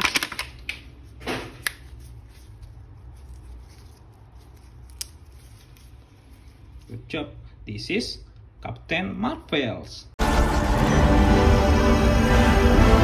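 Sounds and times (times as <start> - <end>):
plastic toy rustling: 0.0 - 6.9.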